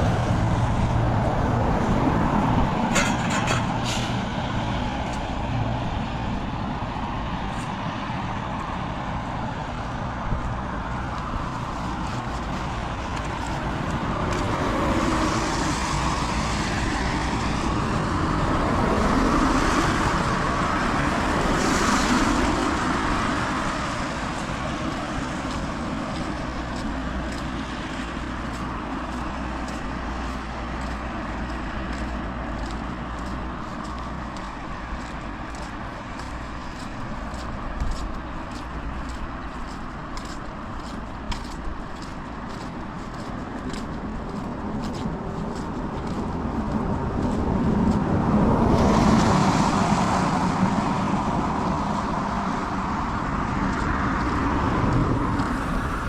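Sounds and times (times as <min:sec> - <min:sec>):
car tyres hissing on wet road: 0:10.9 - 0:34.8, 0:48.2 - 0:56.0.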